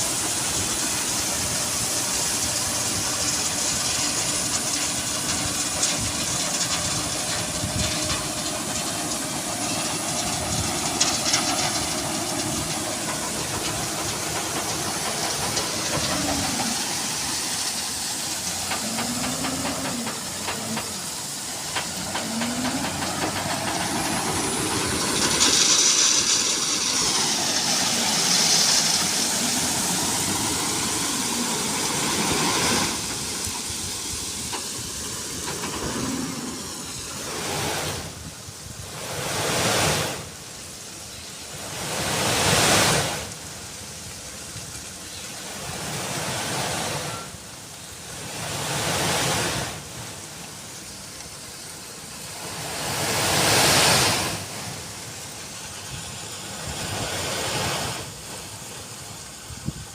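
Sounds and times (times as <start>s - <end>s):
diesel engine revving: 0.0s - 38.3s
loud hissing rush: 0.0s - 59.9s.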